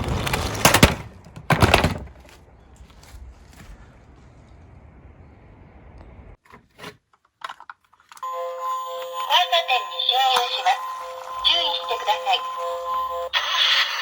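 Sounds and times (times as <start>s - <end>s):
tinny electronic chime tones: 8.2s - 13.5s
recorded voice: 9.2s - 14.0s.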